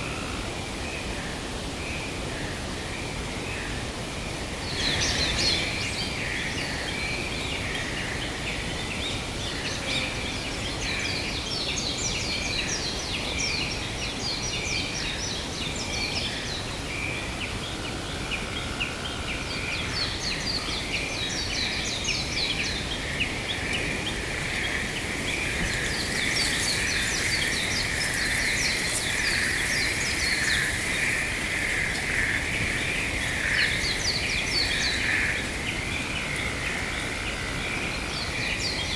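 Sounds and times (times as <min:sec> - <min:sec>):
wind-like rush: 0:00.5 - 0:09.6, 0:21.3 - 0:38.9
birds chirping and twittering: 0:04.0 - 0:38.9
frog chorus: 0:17.8 - 0:38.9.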